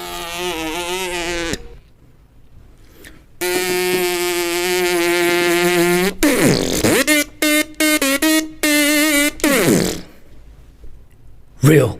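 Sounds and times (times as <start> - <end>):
buzzy cartoon sound effect notes: 0.0 - 1.8, 3.4 - 10.1.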